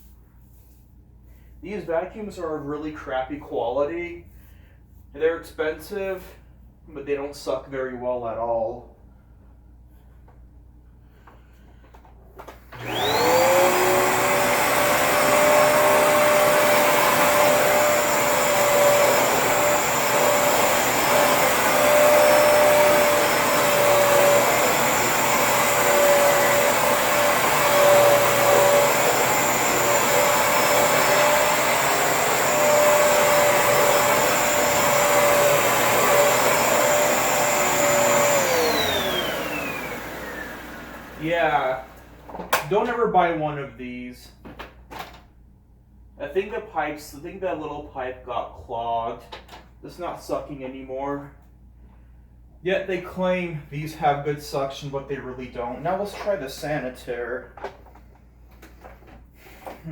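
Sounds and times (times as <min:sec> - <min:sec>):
vacuum cleaner motor whine: 0:12.4 - 0:42.6.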